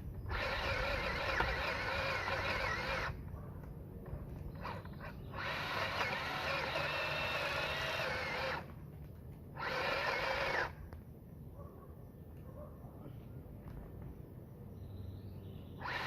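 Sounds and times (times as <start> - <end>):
electric pole saw whining: 0.2 - 3.2, 4.5 - 8.7, 9.5 - 10.8, 15.8 - 16.0.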